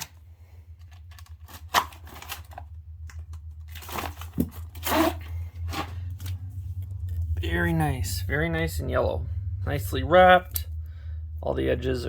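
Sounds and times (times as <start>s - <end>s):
packaging crinkling and rustling: 0.8s - 6.4s.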